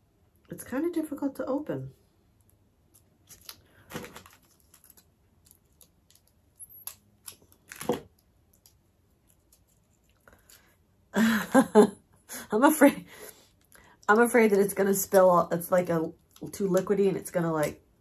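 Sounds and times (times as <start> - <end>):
packaging crinkling and tearing: 3.2 - 10.7.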